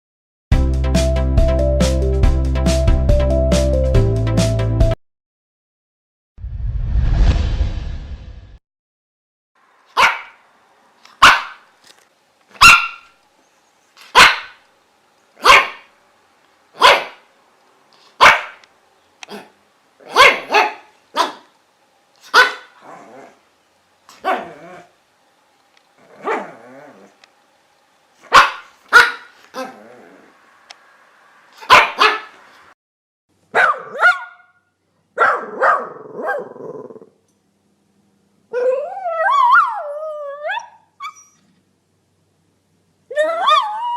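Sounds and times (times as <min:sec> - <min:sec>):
dogs barking: 0:09.9 - 0:10.4, 0:11.1 - 0:11.7, 0:12.6 - 0:13.1, 0:14.0 - 0:14.7, 0:15.4 - 0:15.9, 0:16.7 - 0:17.3, 0:18.1 - 0:21.6, 0:22.2 - 0:23.0, 0:24.1 - 0:24.8, 0:26.1 - 0:27.0, 0:28.2 - 0:29.8, 0:31.6 - 0:32.5, 0:33.5 - 0:34.6, 0:35.2 - 0:36.6
dog whining: 0:26.0 - 0:27.2, 0:29.0 - 0:30.4, 0:38.5 - 0:41.6, 0:43.1 - 0:43.9.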